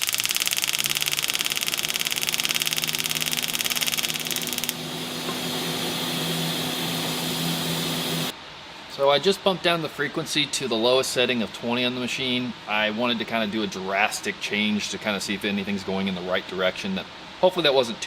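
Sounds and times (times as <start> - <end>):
welding arc buzzing: 0.0 - 8.3.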